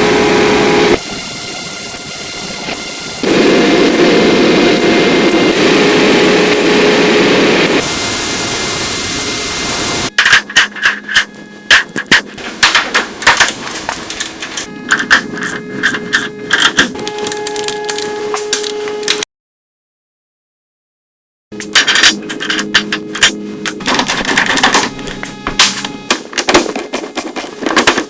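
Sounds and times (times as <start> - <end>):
loud machine noise: 0.0 - 19.2, 21.5 - 28.0.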